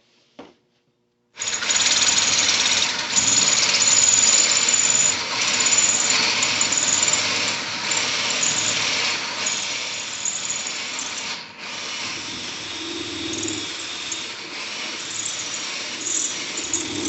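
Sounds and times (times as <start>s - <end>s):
electric drill boring into steel: 1.4s - 17.0s.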